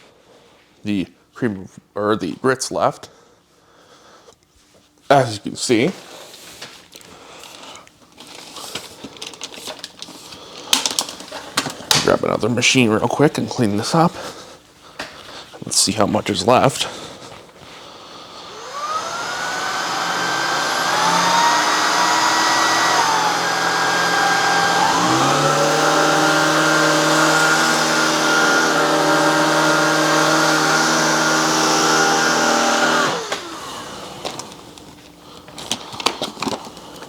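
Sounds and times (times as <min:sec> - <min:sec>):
vacuum cleaner motor whining: 0:18.2 - 0:37.0.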